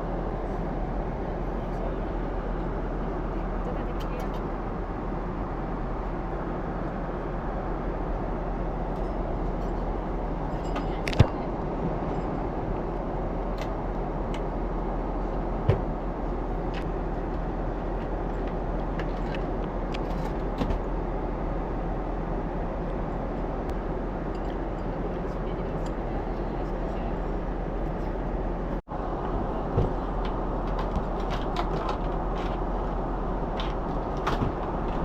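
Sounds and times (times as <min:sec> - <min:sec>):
airliner cabin engine rush: 0:00.0 - 0:35.0.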